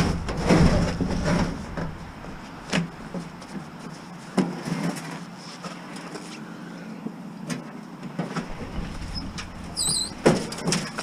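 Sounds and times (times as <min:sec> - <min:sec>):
sharp knocks: 0:00.0 - 0:03.8, 0:08.4 - 0:11.0
low rumble: 0:00.0 - 0:04.1, 0:08.4 - 0:11.0.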